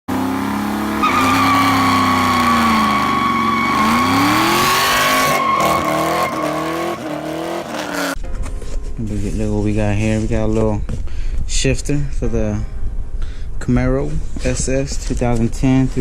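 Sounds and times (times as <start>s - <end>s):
car engine revving: 0.1s - 8.2s
tyres squealing: 0.7s - 8.2s.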